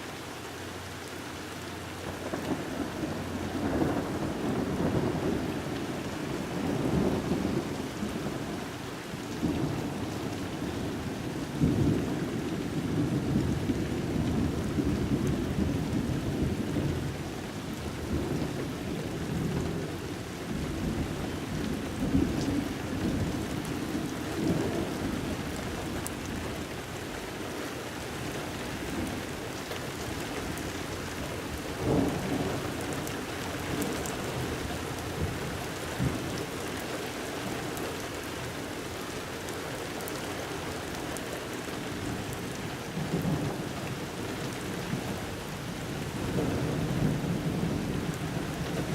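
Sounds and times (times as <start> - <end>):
steady rain: 0.0 - 48.9
rolling thunder: 46.0 - 48.9.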